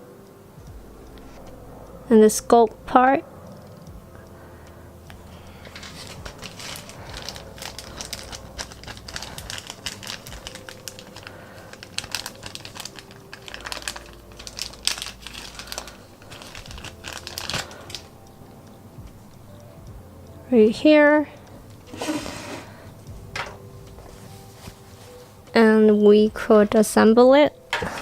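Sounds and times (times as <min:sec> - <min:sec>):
plastic packaging crinkling: 0:05.5 - 0:18.1.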